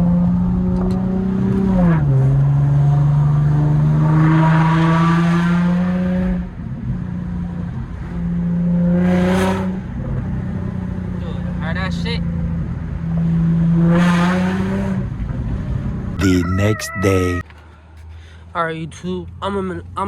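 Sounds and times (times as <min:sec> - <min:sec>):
car engine and exhaust drone: 0:00.0 - 0:16.4, 0:17.1 - 0:20.0.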